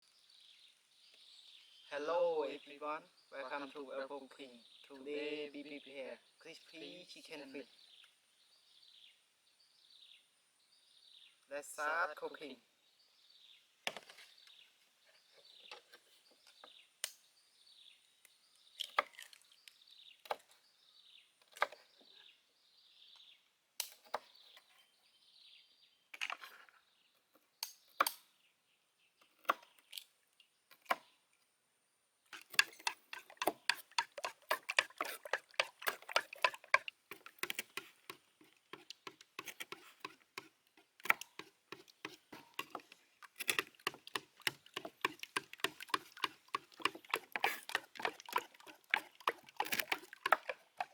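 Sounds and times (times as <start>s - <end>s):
knife chopping on wooden board: 32.4s - 50.9s.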